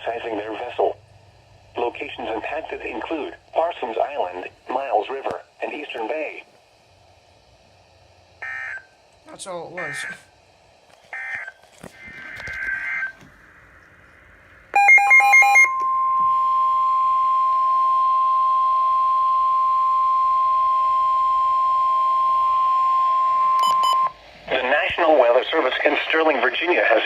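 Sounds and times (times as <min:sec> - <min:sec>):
steady warning alarm tone: 0:08.4 - 0:10.3, 0:11.1 - 0:13.3, 0:14.7 - 0:24.7
chopped data beeps: 0:14.8 - 0:24.2.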